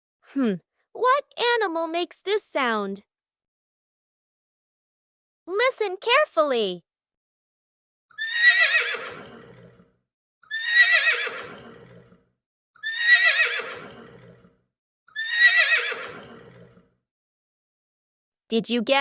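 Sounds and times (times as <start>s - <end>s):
horse whinnying: 8.1s - 17.0s.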